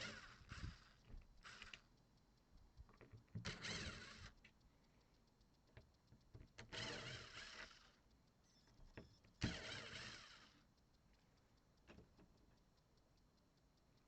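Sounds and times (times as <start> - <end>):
cordless drill running: 0.0 - 1.8, 3.4 - 4.3, 6.7 - 8.0, 9.4 - 10.6.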